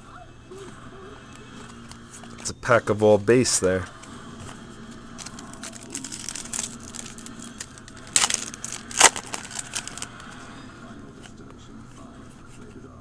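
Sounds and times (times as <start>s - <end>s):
wrapper crinkling and tearing: 5.2s - 10.3s.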